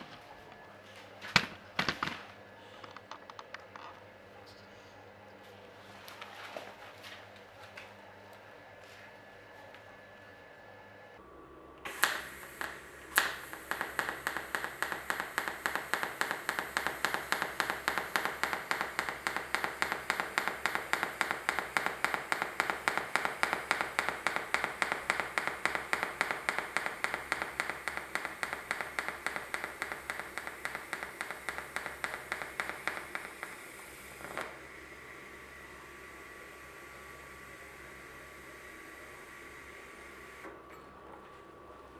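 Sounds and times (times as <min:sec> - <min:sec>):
pulsed welding arc crackling: 0:11.9 - 0:35.4.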